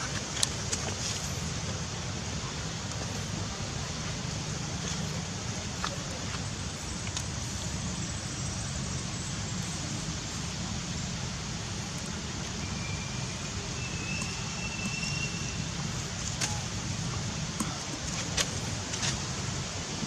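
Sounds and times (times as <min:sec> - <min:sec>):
low outdoor rumble: 0:00.0 - 0:20.0
thin high whistle: 0:12.6 - 0:15.6.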